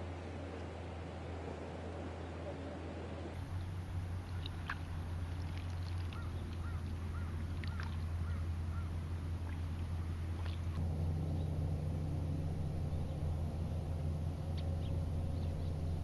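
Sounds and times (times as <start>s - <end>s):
low outdoor rumble: 0.0s - 16.0s
thin bird chirps: 3.4s - 9.8s.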